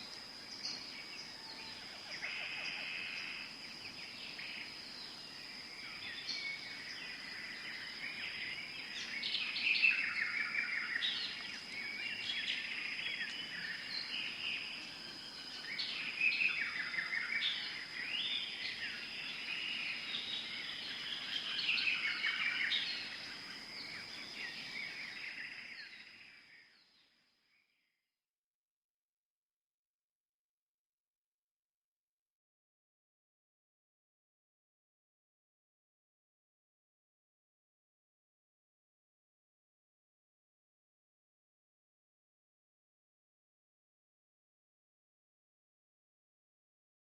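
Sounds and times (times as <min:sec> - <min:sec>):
birds chirping: 0:00.0 - 0:27.2.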